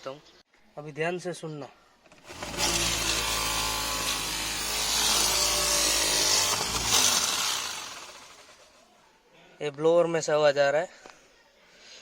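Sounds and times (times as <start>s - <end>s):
car blower fan rushing: 2.2s - 8.7s
motor hum: 2.2s - 8.8s.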